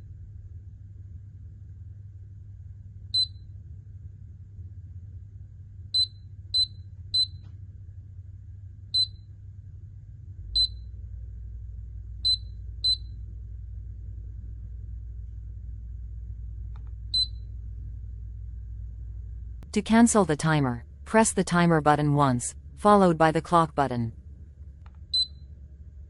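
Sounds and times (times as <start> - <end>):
low steady hum: 0.0 - 26.0
control panel beeping: 25.2 - 25.4.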